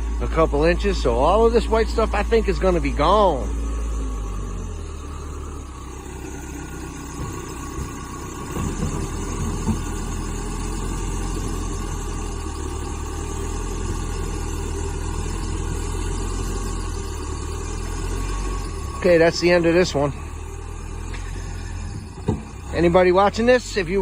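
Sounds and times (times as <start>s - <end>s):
diesel engine running: 0.0s - 24.0s
knocks: 22.2s - 22.6s.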